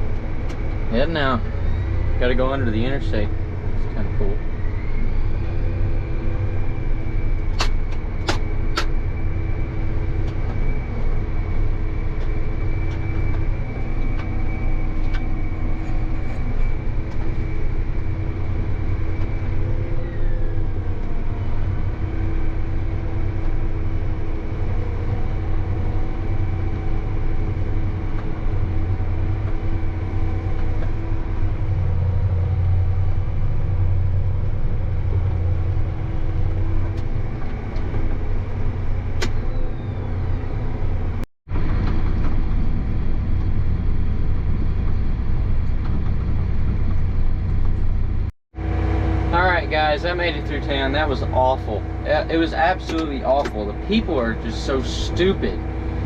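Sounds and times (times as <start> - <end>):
high whine: 0.0 - 56.0
tractor engine rumble: 0.0 - 56.0.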